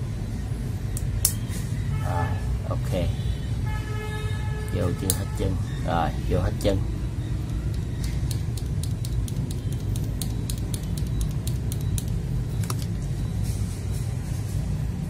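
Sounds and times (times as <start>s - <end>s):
keyboard switches clicking: 7.5s - 12.9s.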